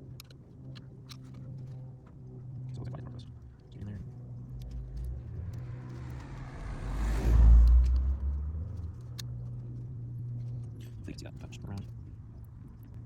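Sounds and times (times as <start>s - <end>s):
steady low hum: 0.0s - 13.0s
car driving past: 4.4s - 10.8s.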